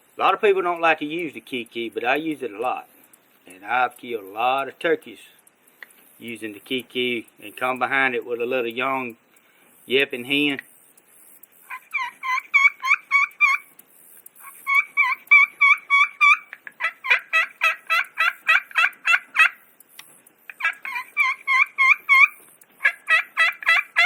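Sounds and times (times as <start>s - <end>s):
turkey call yelping: 11.6s - 13.8s, 14.4s - 19.7s, 20.5s - 24.0s.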